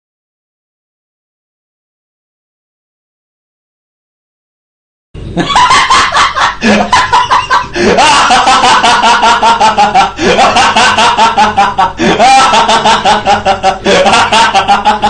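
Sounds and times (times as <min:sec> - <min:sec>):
person laughing: 0:05.4 - 0:15.0.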